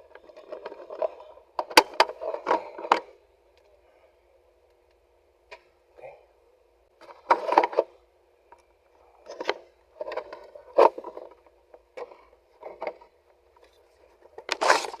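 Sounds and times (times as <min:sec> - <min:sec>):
plastic scrapes and clicks: 0:14.4 - 0:15.0.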